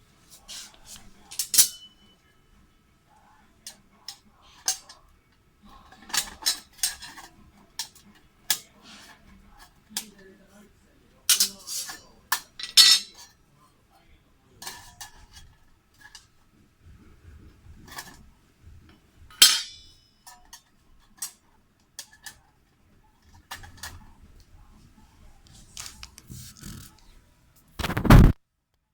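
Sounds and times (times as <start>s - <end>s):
metal parts clinking and tapping: 1.3s - 2.2s, 5.8s - 8.7s, 11.3s - 13.3s, 19.3s - 21.4s.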